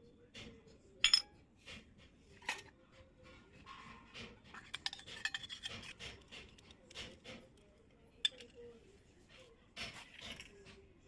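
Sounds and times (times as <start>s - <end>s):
toy kitchen pieces clicking: 4.4s - 8.6s.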